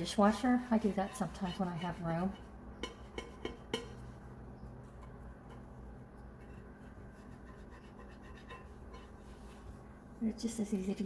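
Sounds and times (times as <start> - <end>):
cloth rubbing plate: 5.6 - 10.2.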